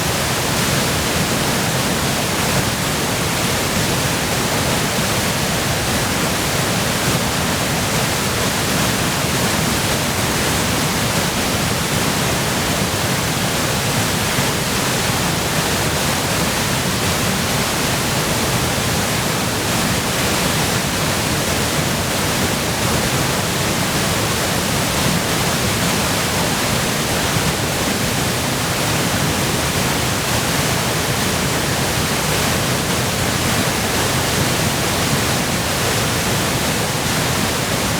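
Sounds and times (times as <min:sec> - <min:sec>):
roaring waterfall: 0:00.0 - 0:37.9.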